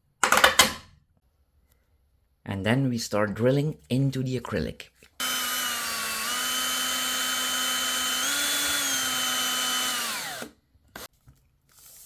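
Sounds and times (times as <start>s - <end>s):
electric drill boring plastic: 5.2s - 11.1s.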